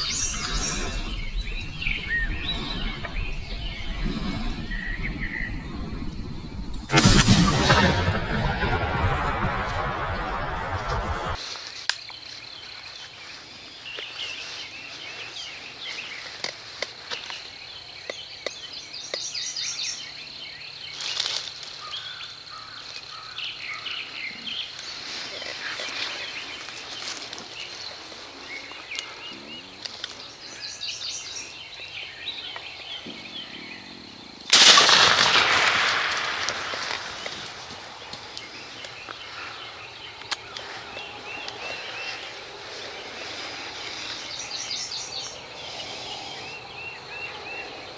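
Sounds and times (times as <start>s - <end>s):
small birds chirping and singing: 0.0s - 5.6s, 12.0s - 34.5s, 37.2s - 47.9s
shotgun blast with echo: 6.9s - 11.4s, 34.6s - 37.7s.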